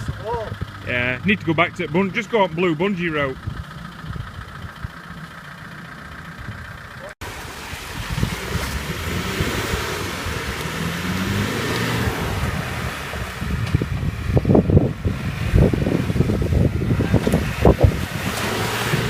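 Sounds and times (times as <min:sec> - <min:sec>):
diesel engine revving: 0:00.0 - 0:19.0.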